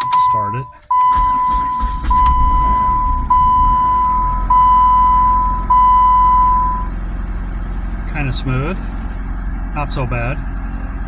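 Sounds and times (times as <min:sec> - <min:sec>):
car warning beep: 0:00.0 - 0:07.0
car engine idling: 0:00.0 - 0:11.0.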